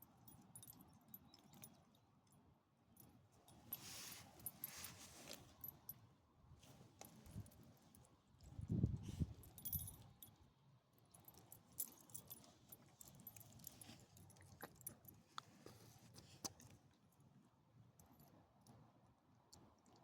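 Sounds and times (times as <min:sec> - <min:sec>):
light metallic jingling: 0:03.4 - 0:06.0, 0:09.0 - 0:10.5, 0:11.2 - 0:15.2.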